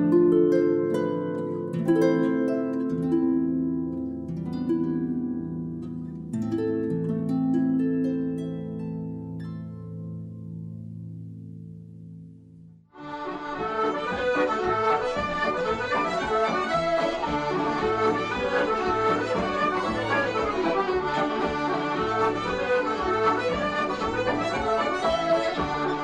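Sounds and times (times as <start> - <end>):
accordion dance tune: 13.0 - 26.0.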